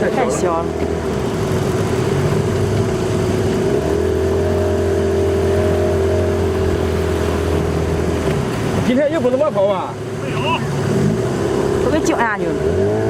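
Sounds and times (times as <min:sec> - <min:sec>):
boat motor running: 0:00.0 - 0:13.0
water washing: 0:00.0 - 0:13.0.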